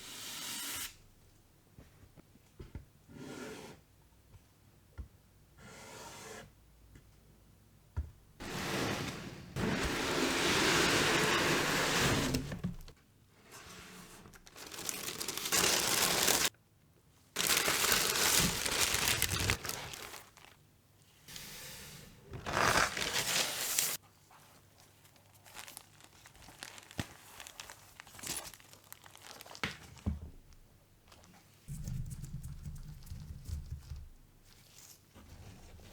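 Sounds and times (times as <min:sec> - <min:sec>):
paper crinkling and tearing: 0:14.3 - 0:16.5, 0:17.4 - 0:20.6, 0:22.4 - 0:24.0, 0:24.8 - 0:30.1.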